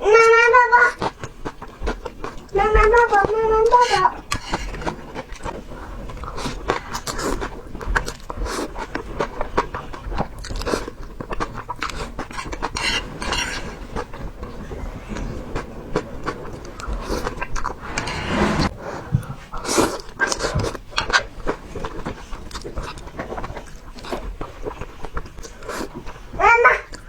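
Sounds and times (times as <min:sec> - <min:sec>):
person chewing crunchy food: 0:01.0 - 0:02.6, 0:03.9 - 0:14.9.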